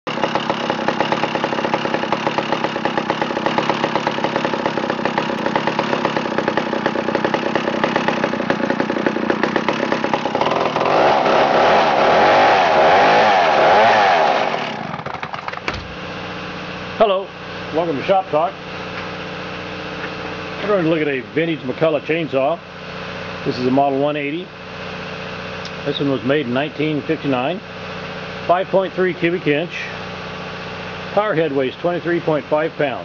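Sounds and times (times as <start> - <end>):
chainsaw running and revving: 0.1 - 15.5.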